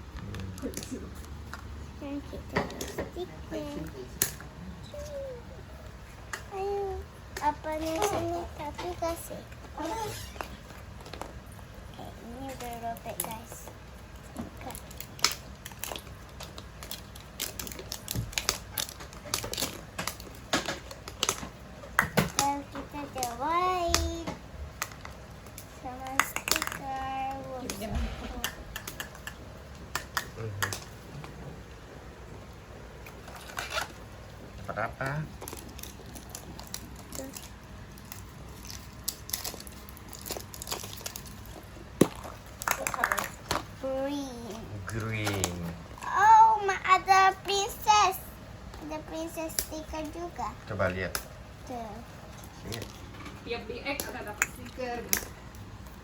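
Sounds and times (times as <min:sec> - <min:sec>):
wrapper crinkling: 0:14.6 - 0:21.6, 0:33.1 - 0:34.1, 0:34.8 - 0:43.8.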